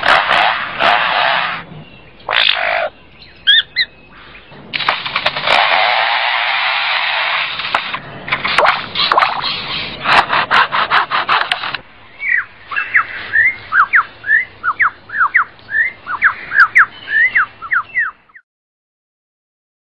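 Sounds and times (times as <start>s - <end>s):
bird mimicking chainsaw buzz: 0.0s - 1.6s
bird whistling sliding notes: 5.4s - 18.1s.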